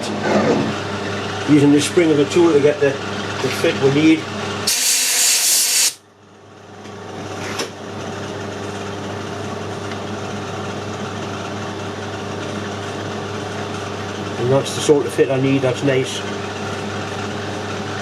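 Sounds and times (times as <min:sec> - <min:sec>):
loud hiss: 0:04.7 - 0:06.0.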